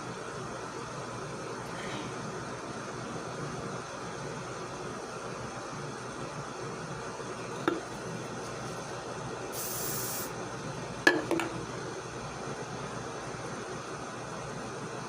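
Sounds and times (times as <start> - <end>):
aerosol hair spray burst: 9.6 - 10.3.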